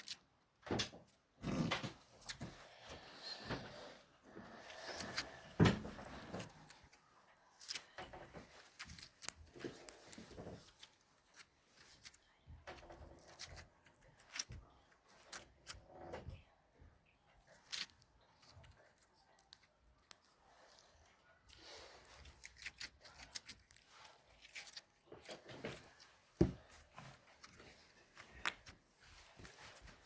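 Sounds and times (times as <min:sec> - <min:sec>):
slime clicking and squelching: 0:06.4 - 0:15.8, 0:17.3 - 0:20.4, 0:21.4 - 0:28.8.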